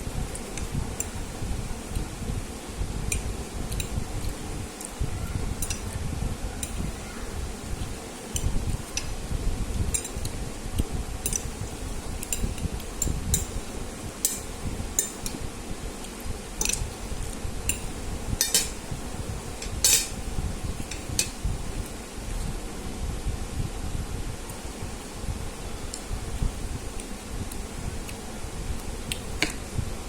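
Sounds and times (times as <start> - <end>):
cutlery clinking against a dish: 14.2 - 15.4, 16.6 - 16.8, 18.4 - 18.8, 19.6 - 20.2.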